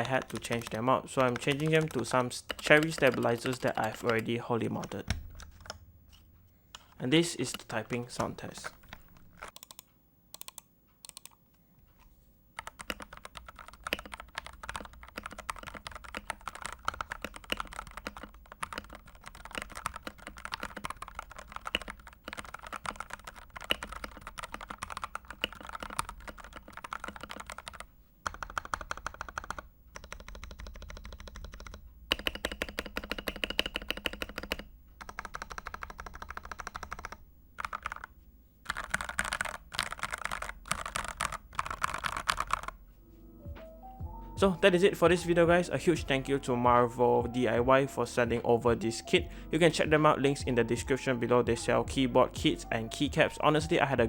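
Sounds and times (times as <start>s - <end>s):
mechanical keyboard typing: 0.0s - 5.8s, 6.8s - 11.4s, 12.6s - 42.8s.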